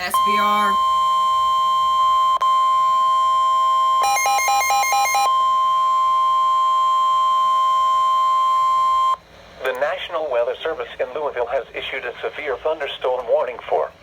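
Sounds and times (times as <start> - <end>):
rapid alternating beeps: 0.0 - 1.0
steady warning alarm tone: 0.0 - 9.2.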